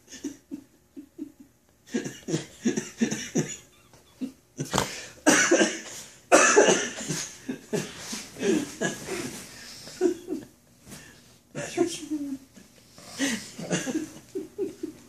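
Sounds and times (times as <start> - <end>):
stifled laughter: 0.0 - 5.8, 6.6 - 10.5, 13.2 - 15.0
person coughing: 1.9 - 3.6, 4.6 - 9.3, 13.2 - 14.1.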